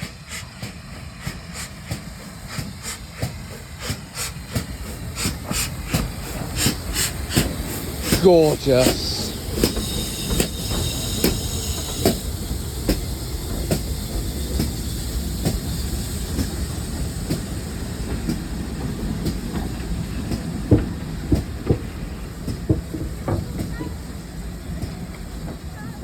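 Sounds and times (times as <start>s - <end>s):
steam train rumbling along track: 0.0s - 26.0s
wheels clicking over rail joints: 16.3s - 26.0s.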